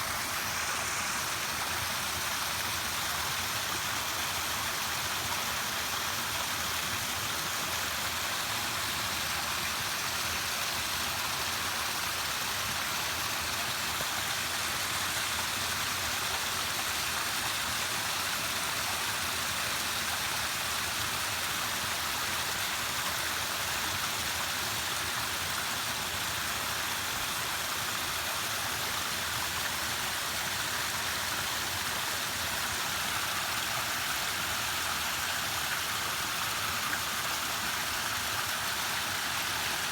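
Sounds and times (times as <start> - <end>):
falling water rushing: 0.0 - 19.6, 28.9 - 39.9.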